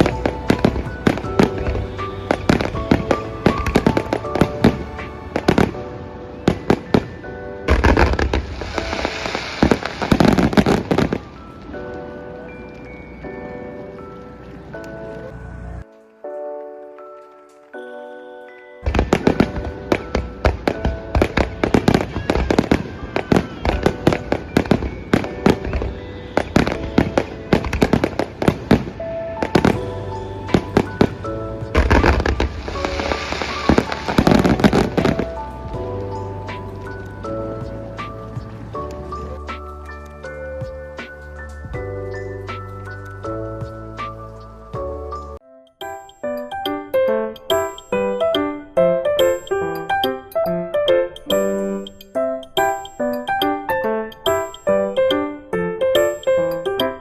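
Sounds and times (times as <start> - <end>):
fireworks bangs: 0.0 - 11.9, 18.8 - 40.0
music playing: 0.0 - 57.0.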